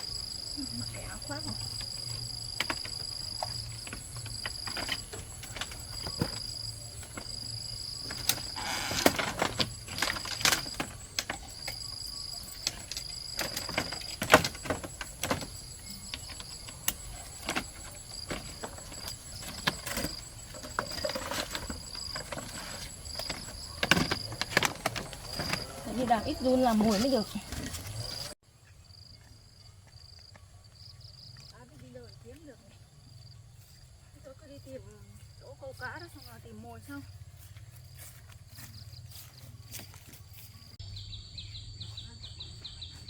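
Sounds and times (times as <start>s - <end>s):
insects chirring: 0.0s - 43.0s
clicks knocks and rustles of handling: 1.6s - 28.4s.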